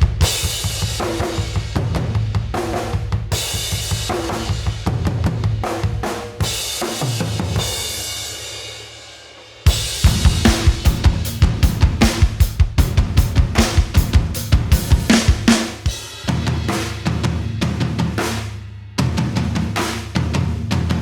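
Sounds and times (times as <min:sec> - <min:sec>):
ringing drum and cymbal hit: 0:00.0 - 0:21.0
rock drum beat: 0:00.0 - 0:21.0.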